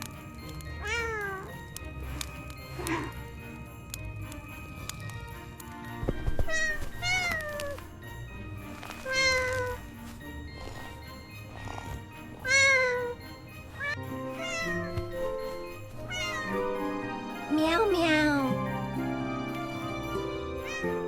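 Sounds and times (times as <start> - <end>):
soft background music: 0.0 - 21.0
kitten meowing: 0.8 - 1.5, 6.5 - 7.8, 9.1 - 9.8, 12.5 - 13.2, 13.8 - 15.0, 16.0 - 16.6, 20.6 - 21.0.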